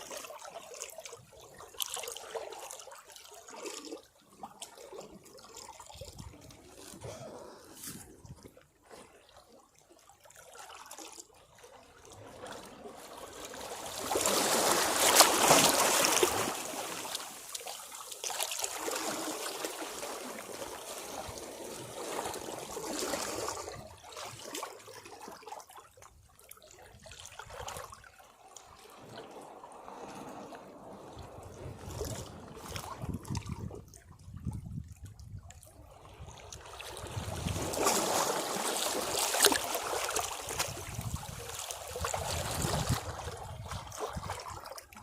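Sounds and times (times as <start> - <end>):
sea waves breaking on rocks: 12.3 - 24.3, 28.6 - 33.7, 36.1 - 44.5.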